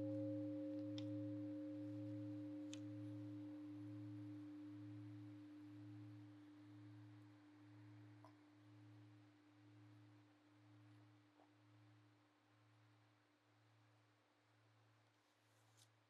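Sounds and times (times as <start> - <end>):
meditation bell ringing: 0.0 - 6.1.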